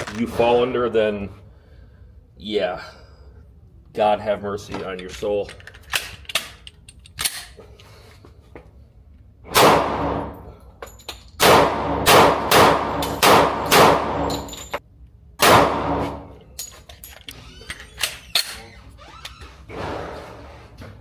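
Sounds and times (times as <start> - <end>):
gunshots with ringing echo: 9.5 - 10.5, 11.4 - 14.5, 15.4 - 16.4.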